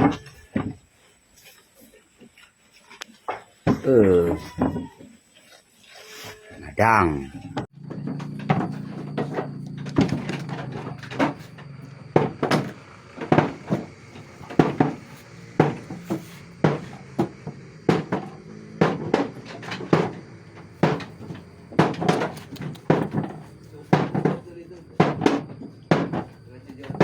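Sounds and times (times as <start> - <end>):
sharp knocks and clatter: 7.7 - 27.0.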